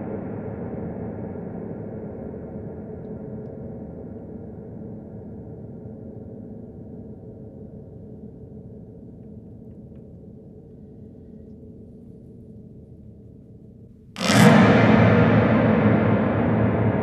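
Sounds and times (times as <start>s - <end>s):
loud clang of piano strings: 14.2s - 17.0s.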